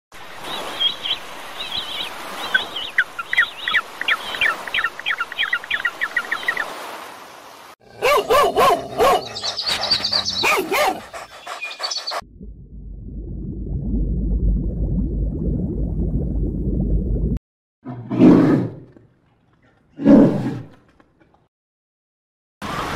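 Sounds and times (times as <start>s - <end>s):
bird chirping: 0.8s - 6.7s, 8.8s - 12.2s
dog barking: 8.0s - 12.0s.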